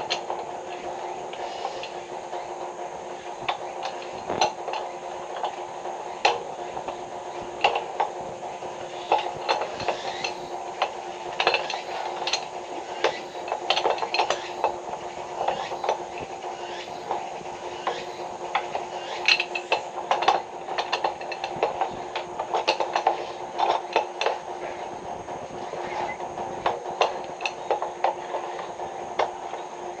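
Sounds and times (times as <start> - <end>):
steady hum: 0.0 - 30.0
tools clinking and knocking: 9.0 - 14.8, 17.8 - 24.8.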